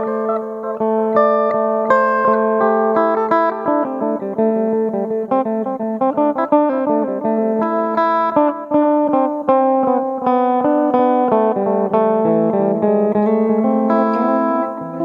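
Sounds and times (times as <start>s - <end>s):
plucked lute melody: 0.0s - 8.4s, 12.8s - 15.0s.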